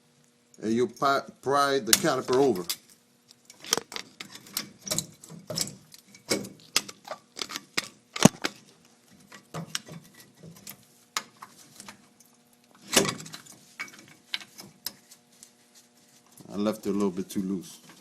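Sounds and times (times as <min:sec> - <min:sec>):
metal clicks and clanks: 0:03.5 - 0:08.6.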